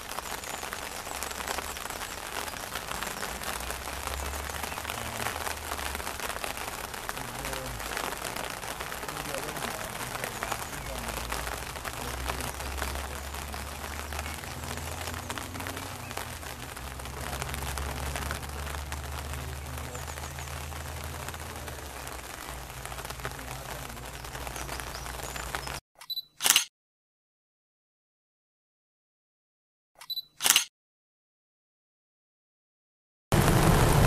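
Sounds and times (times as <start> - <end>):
rain pattering: 0.0 - 25.8, 33.3 - 34.0.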